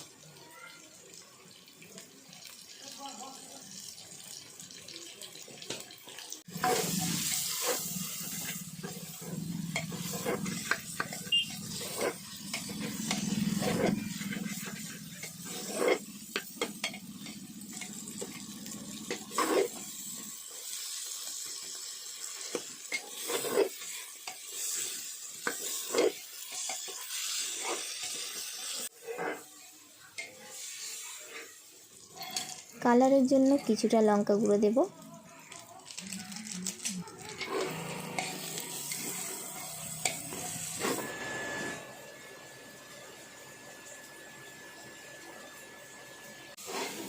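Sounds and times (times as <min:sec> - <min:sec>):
food sizzling in hot oil: 0:00.0 - 0:47.0
spoon scraping a pan: 0:06.5 - 0:32.7, 0:36.6 - 0:41.1, 0:46.6 - 0:47.0.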